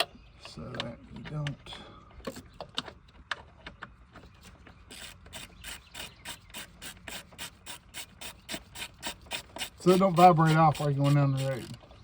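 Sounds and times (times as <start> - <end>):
hand ratchet clicking: 4.9 - 11.8.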